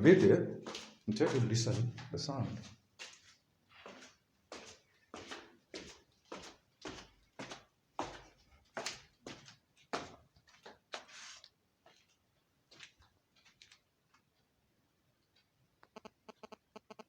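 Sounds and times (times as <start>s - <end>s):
sharp knocks and scuffs: 0.6s - 3.3s, 3.9s - 11.2s.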